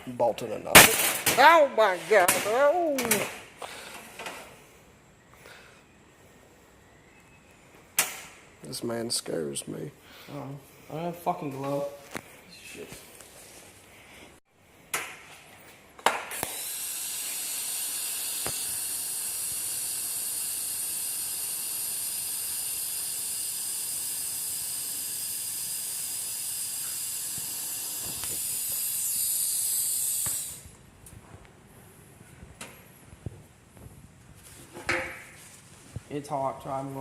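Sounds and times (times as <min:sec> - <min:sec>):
welder click: 0:16.1 - 0:30.7
welding hiss: 0:16.3 - 0:30.8.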